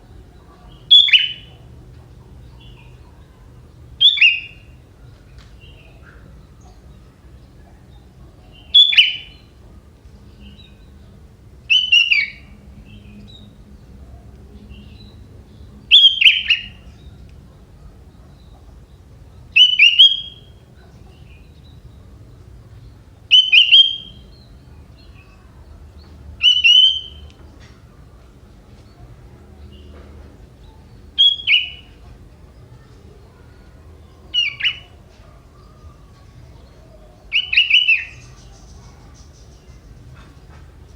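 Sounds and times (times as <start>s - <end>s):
faint bird chirps: 0.0s - 40.9s
bird sharp calls: 0.6s - 1.6s, 8.6s - 9.5s, 11.7s - 12.6s, 15.9s - 17.1s, 19.6s - 21.2s, 23.3s - 25.5s, 26.4s - 27.8s, 31.2s - 32.0s, 32.7s - 36.0s, 36.6s - 40.6s
bird calling falling notes: 19.6s - 20.6s, 26.4s - 27.8s, 31.1s - 32.0s.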